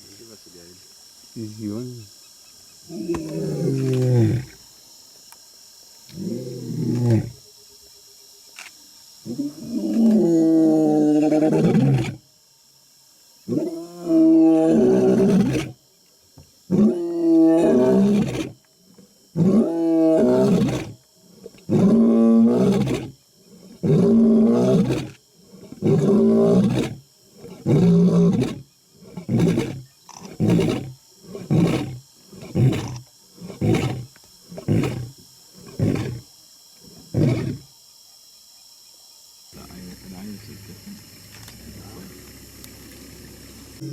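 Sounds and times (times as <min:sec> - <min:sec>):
lion roaring: 0:02.9 - 0:04.5, 0:06.1 - 0:07.4, 0:09.3 - 0:12.2, 0:13.5 - 0:15.8, 0:16.7 - 0:18.6, 0:19.4 - 0:36.2, 0:36.9 - 0:37.6.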